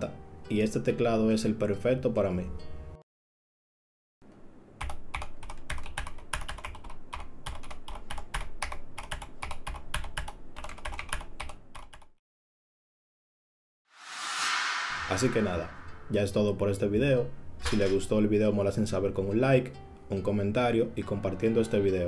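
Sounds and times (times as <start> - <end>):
fast typing on mechanical keyboard: 4.8 - 12.1.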